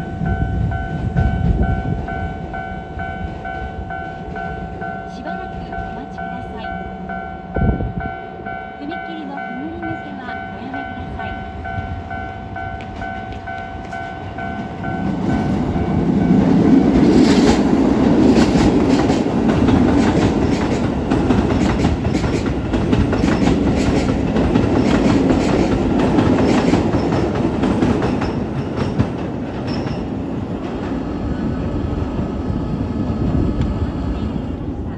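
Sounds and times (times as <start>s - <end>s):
level crossing warning bell: 0.0s - 30.4s
train wheels clattering over rail joints: 12.8s - 31.1s.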